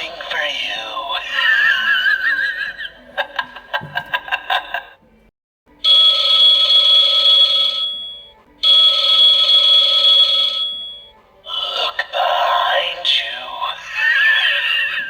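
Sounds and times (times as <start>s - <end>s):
telephone ringing: 5.8s - 11.2s.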